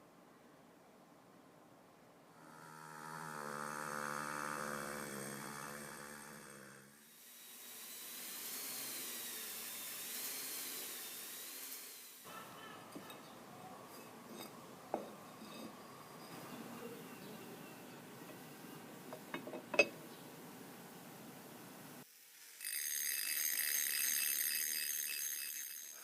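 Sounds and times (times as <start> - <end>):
small power tool motor running: 3.9 - 12.3, 22.2 - 26.0.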